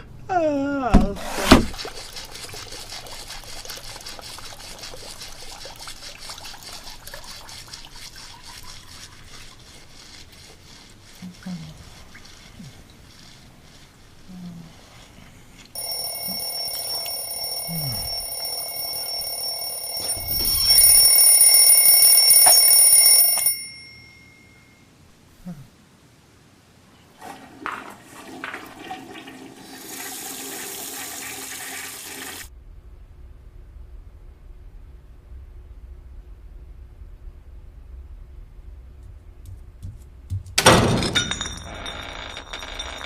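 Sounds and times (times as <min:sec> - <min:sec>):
alarm ringing: 0:15.8 - 0:24.8.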